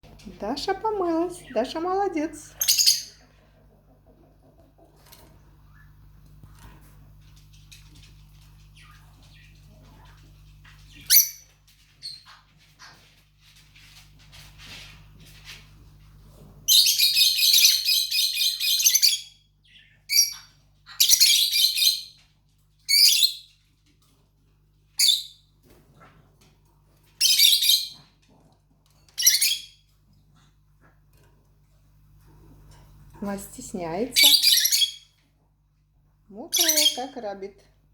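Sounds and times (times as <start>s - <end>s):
bird chirping and squawking: 2.5s - 3.3s, 16.7s - 22.2s, 27.2s - 28.0s, 29.2s - 29.8s, 34.2s - 35.2s, 36.5s - 37.1s.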